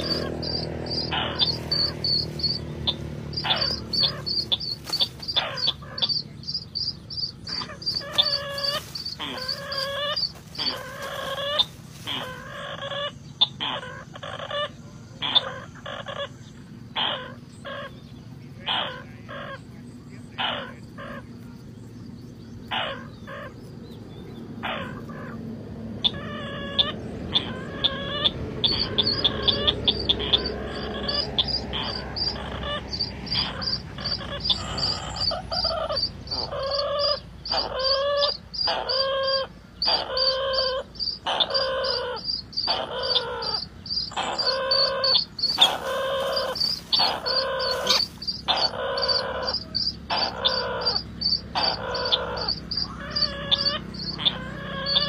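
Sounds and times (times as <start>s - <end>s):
fast high bird chirping: 0.0s - 16.0s, 26.0s - 55.0s
bird call with stacked pitches: 26.0s - 55.0s.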